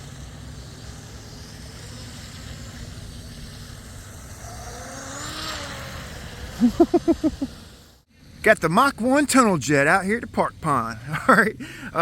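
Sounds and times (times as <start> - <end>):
distant rc boat motor whine: 0.0 - 8.4.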